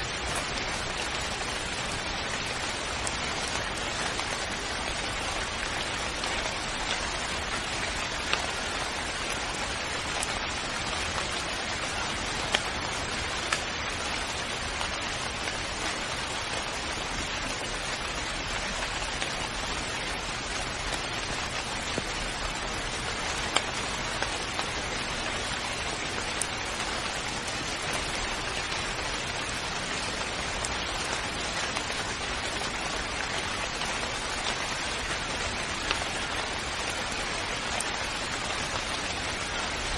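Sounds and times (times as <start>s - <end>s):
steady rain hiss: 0.0s - 39.9s
sharp water drips: 17.9s - 39.9s.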